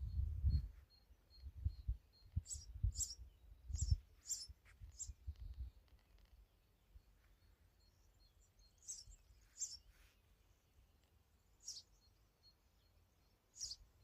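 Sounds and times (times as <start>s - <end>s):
high bird chirps: 0.0s - 5.6s, 7.8s - 10.0s, 11.6s - 13.9s.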